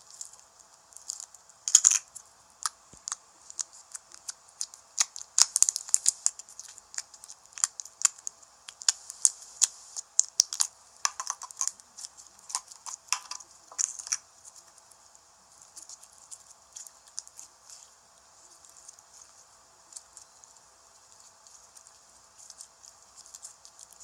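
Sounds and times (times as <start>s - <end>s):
sharp clicks and crackles from handling: 10.2s - 14.2s.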